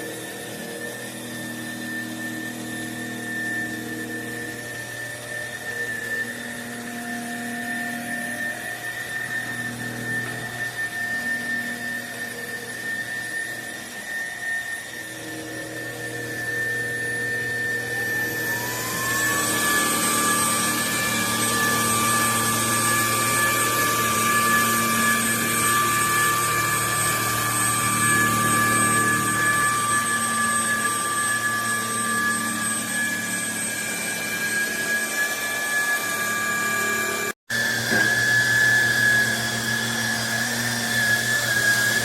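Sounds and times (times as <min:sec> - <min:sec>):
vacuum motor whining: 0:00.0 - 0:42.0.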